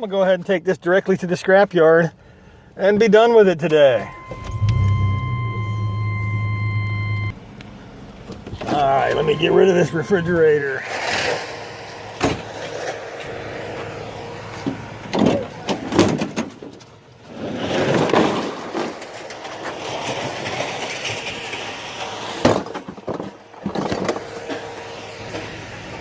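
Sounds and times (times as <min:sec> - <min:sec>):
steady hum: 0:04.0 - 0:16.0.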